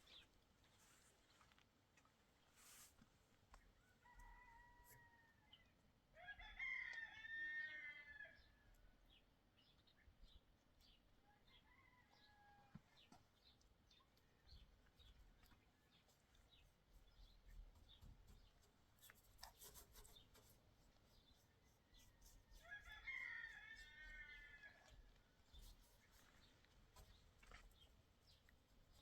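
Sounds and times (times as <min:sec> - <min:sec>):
rooster crowing: 0:06.2 - 0:08.4, 0:22.6 - 0:25.0.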